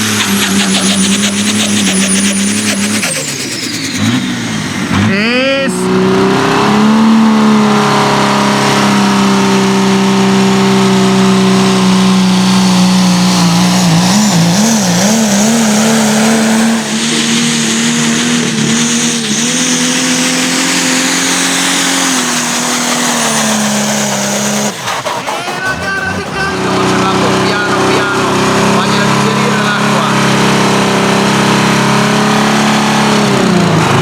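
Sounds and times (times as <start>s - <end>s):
tractor engine at full throttle: 0.0s - 34.0s.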